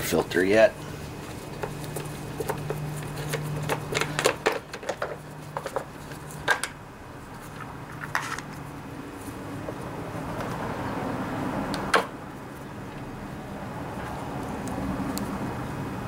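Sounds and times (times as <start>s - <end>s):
clicks and knocks of parts: 1.6s - 6.8s, 7.4s - 8.6s.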